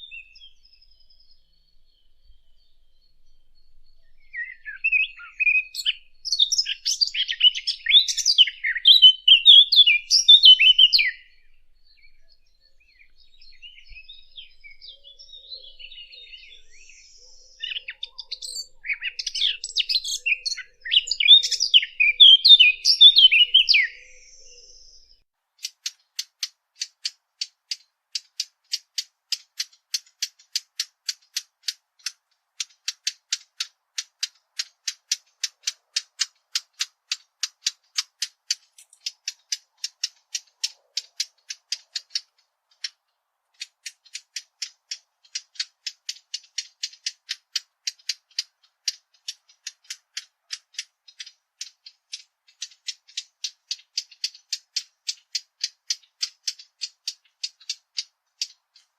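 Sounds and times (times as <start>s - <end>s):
bird song phrase: 0.0s - 25.3s
warbler tac calls: 0.0s - 58.9s.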